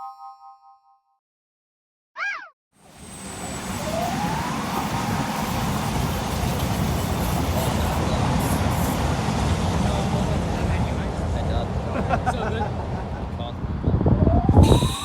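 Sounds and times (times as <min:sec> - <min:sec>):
road traffic noise: 0:02.8 - 0:15.0
wind rumble on microphone: 0:12.3 - 0:15.0.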